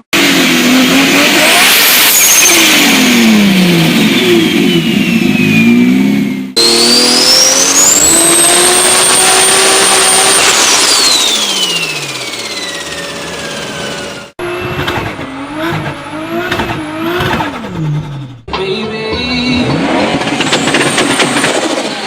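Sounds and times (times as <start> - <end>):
second car engine revving: 0.0 - 10.6, 14.3 - 18.5
turbocharged car engine revving: 0.0 - 18.6.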